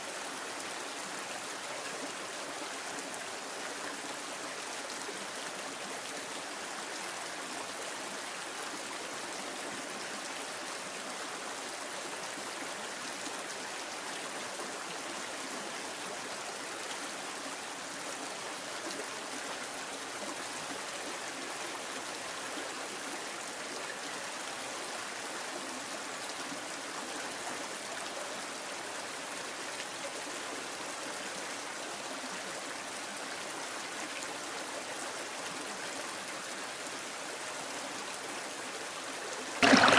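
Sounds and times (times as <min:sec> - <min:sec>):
stream water rushing: 0:39.6 - 0:39.9.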